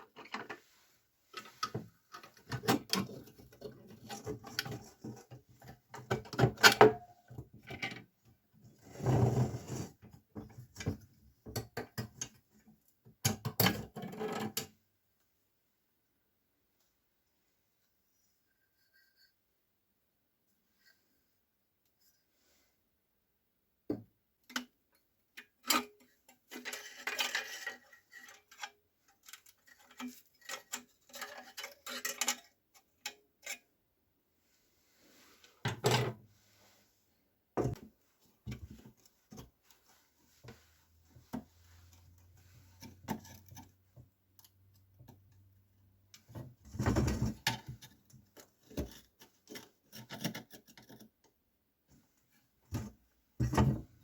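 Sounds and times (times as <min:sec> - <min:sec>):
clicks and clinks of metal parts: 0:25.6 - 0:33.6.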